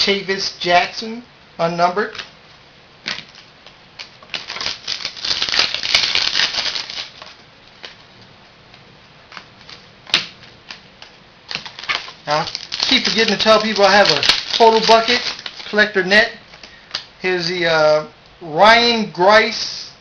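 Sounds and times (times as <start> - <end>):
card wrappers rustling and crackling: 3.1 - 8.0, 9.3 - 17.1.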